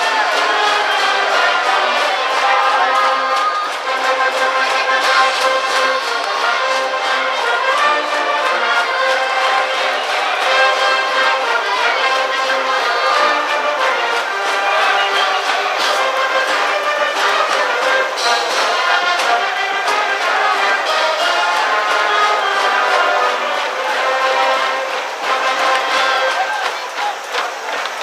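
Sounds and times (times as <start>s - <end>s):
brass band playing: 0.0s - 28.0s
steady drum beat: 13.9s - 28.0s.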